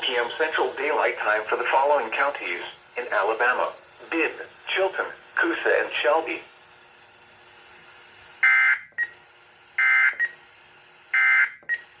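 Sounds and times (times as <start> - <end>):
faint radio hiss: 0.0 - 8.4.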